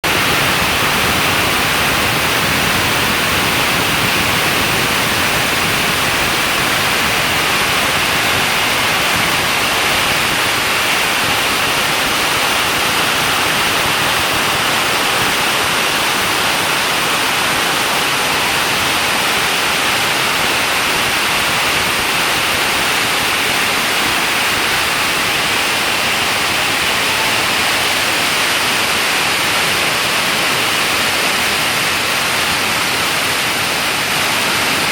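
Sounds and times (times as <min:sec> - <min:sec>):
hail and heavy rain pelting: 0:00.0 - 0:34.9.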